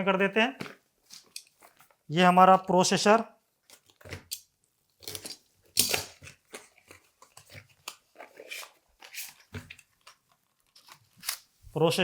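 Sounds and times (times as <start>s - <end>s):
packaging clicks and rustles: 3.6s - 11.6s.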